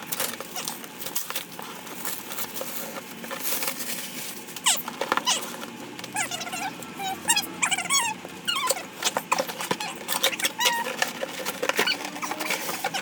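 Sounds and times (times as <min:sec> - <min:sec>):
packaging rustling and clicking: 0:00.0 - 0:13.0
short high-pitched squeaks: 0:11.8 - 0:13.0.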